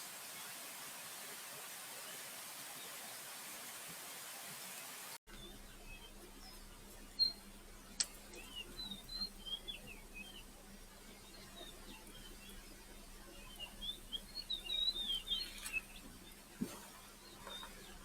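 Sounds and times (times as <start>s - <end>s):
bird chirping and twittering: 5.3s - 16.4s, 17.0s - 18.0s.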